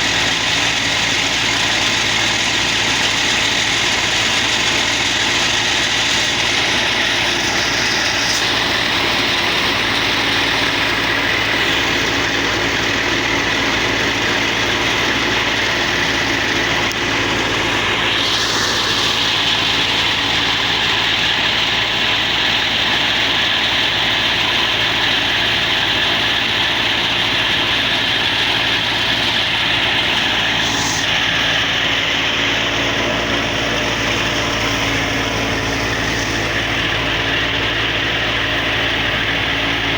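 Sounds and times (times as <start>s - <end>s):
threshing machine droning: 0.0s - 39.9s.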